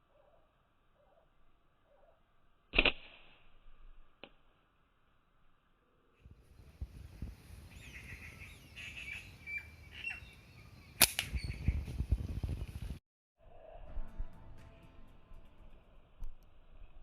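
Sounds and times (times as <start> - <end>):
slingshot crack: 2.7 - 3.6, 11.0 - 11.4
small birds chirping: 6.4 - 12.6.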